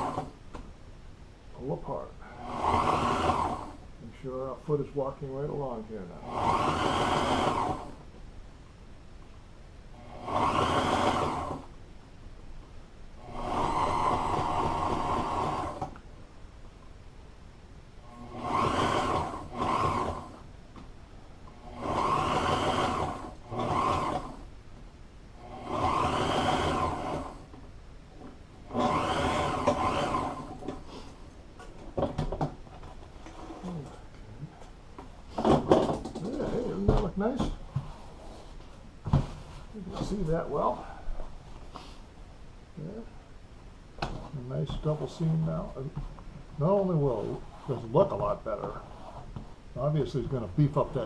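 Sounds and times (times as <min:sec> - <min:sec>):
sewing machine stitching: 0:00.0 - 0:00.4, 0:02.4 - 0:03.8, 0:06.2 - 0:08.0, 0:10.0 - 0:11.7, 0:13.2 - 0:16.0, 0:18.1 - 0:20.4, 0:21.5 - 0:24.5, 0:25.4 - 0:27.6, 0:28.2 - 0:30.8.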